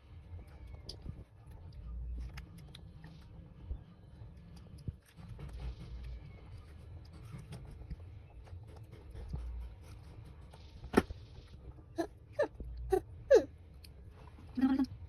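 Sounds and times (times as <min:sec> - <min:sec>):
baby vocalizing: 0:12.4 - 0:13.5.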